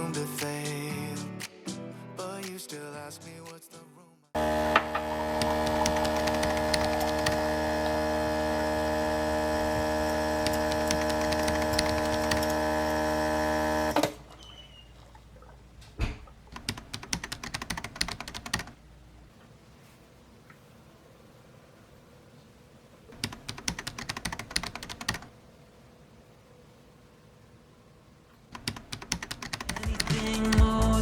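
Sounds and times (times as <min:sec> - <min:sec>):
electric motor humming: 0:04.4 - 0:14.2.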